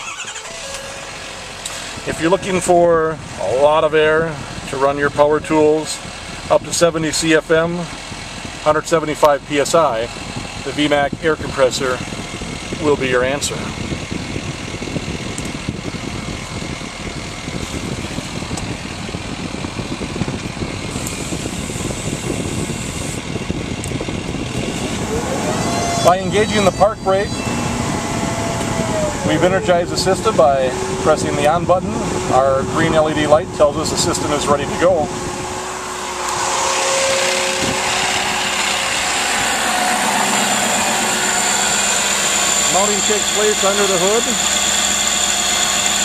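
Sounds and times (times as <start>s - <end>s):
truck engine idling: 0.0s - 46.0s
air compressor whirring: 13.6s - 46.0s.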